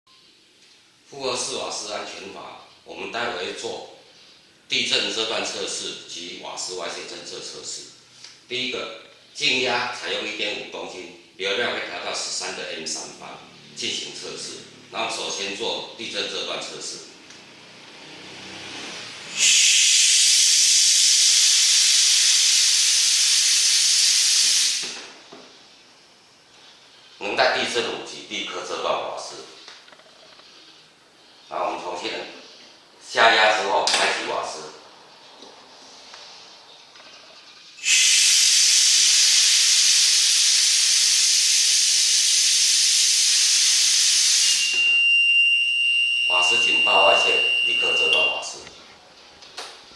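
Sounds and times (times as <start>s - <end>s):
gas hissing through valve: 17.9s - 25.2s, 37.8s - 44.9s
high-pitched alarm tone: 44.4s - 48.7s.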